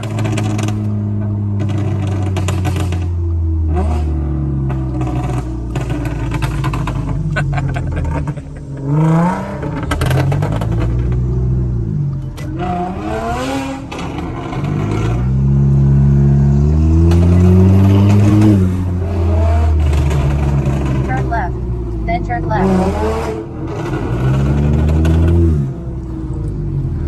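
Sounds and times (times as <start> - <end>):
exhaust crackles and pops: 0.0 - 3.4, 4.7 - 11.5
car engine revving: 0.0 - 27.0.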